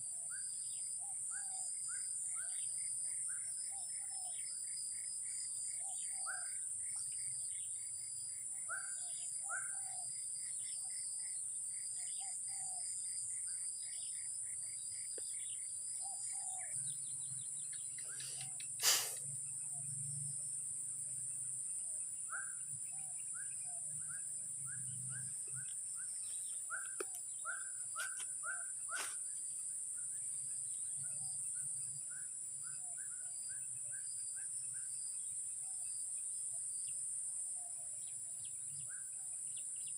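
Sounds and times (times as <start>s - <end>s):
insects droning: 0.0s - 39.9s
short bird chirps: 17.6s - 19.3s, 25.1s - 29.4s.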